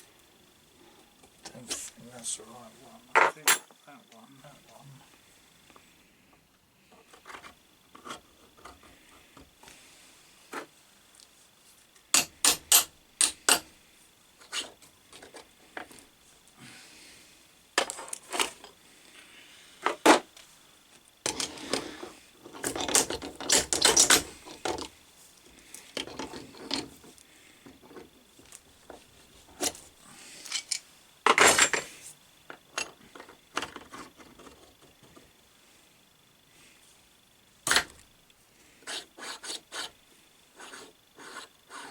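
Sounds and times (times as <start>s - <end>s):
metal clinks and knocks: 3.2s - 3.8s.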